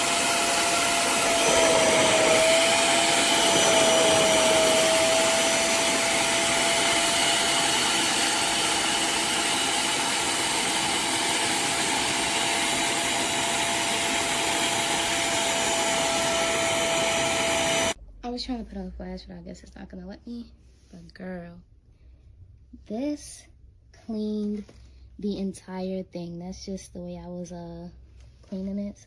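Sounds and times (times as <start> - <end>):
spot cleaner suction motor whine: 0.0 - 18.0.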